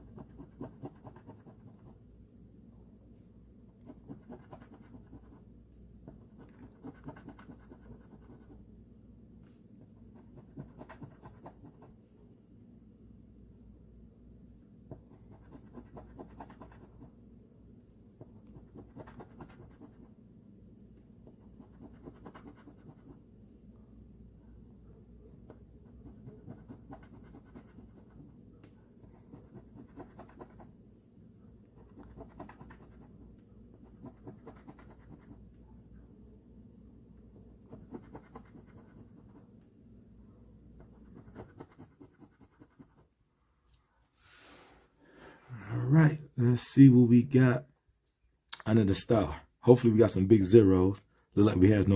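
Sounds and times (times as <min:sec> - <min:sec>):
scratching lottery ticket: 0:00.0 - 0:02.0, 0:03.8 - 0:05.4, 0:06.3 - 0:08.6, 0:10.2 - 0:11.9, 0:15.2 - 0:17.1, 0:18.5 - 0:20.1, 0:21.5 - 0:23.2, 0:25.6 - 0:28.3, 0:29.1 - 0:30.7, 0:31.8 - 0:35.4, 0:37.7 - 0:39.5, 0:41.0 - 0:43.1
low steady hum: 0:00.0 - 0:51.9.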